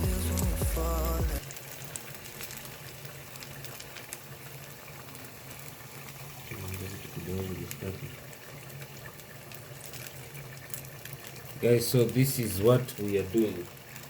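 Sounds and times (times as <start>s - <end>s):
background music: 0.0s - 1.4s
food frying in oil: 0.0s - 14.0s.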